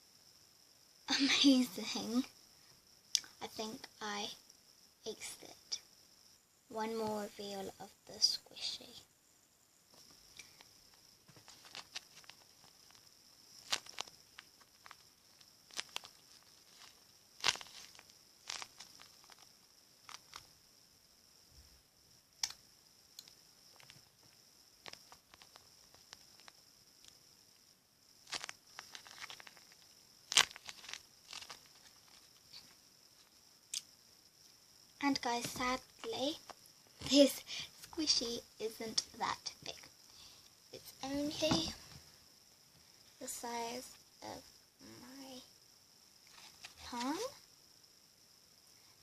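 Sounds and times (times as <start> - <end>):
faint high hiss: 0.0 - 49.0
paper crinkling: 11.3 - 13.0, 13.6 - 19.5, 24.8 - 26.5, 28.2 - 32.7
sharp clicks: 22.4 - 22.6.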